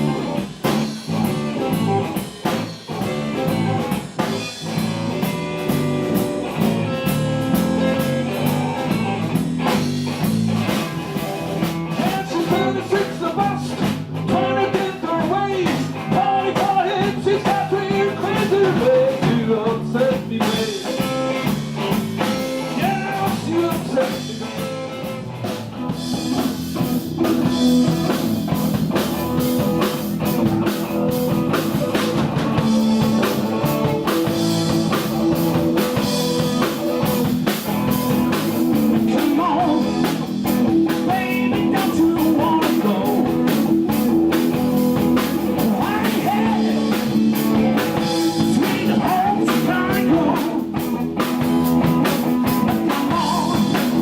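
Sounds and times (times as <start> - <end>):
blues-rock band playing: 0.0 - 54.0.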